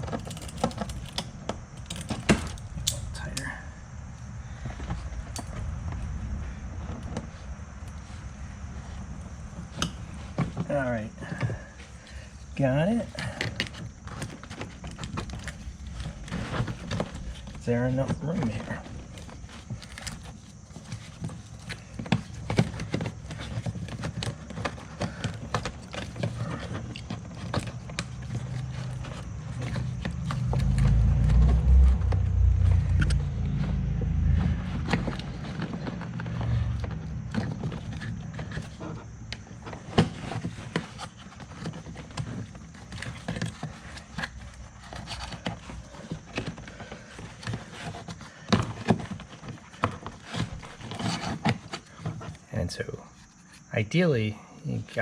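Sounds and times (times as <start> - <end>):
low rumble: 1.0 - 10.3, 28.3 - 38.6.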